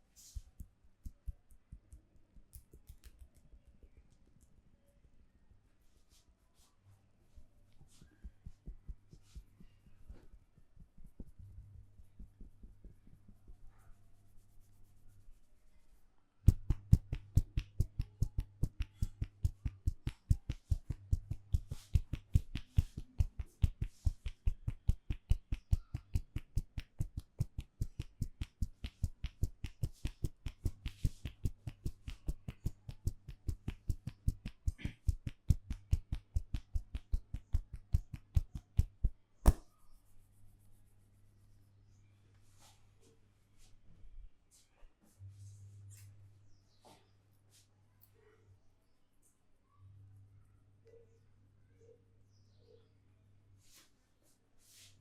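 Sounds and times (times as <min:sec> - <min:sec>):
faint low hum: 0:00.0 - 0:54.3
hand slaps in head massage: 0:16.5 - 0:39.8
soft thumps on head: 0:39.5 - 0:39.7.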